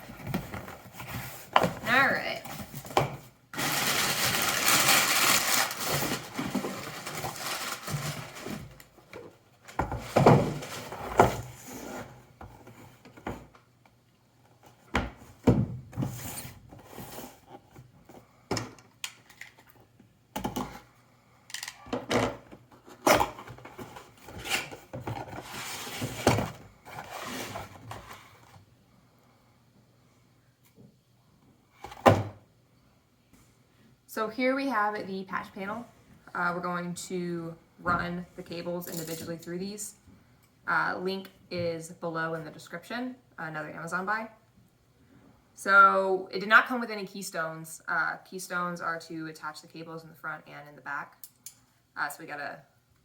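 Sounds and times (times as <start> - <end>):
packaging rustling and scraping: 3.6 - 9.1, 22.8 - 28.6.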